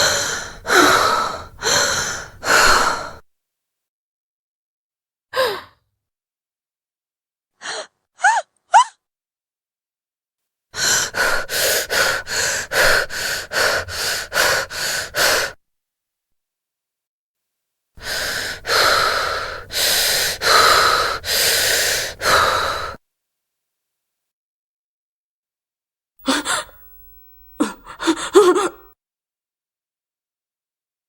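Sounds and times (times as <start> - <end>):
woman gasping: 0.0 - 3.2, 5.4 - 5.8, 10.8 - 15.6, 18.0 - 23.0, 26.2 - 28.9
woman panting: 0.0 - 3.2, 10.8 - 15.6, 18.0 - 23.0, 26.2 - 26.9, 27.6 - 28.9.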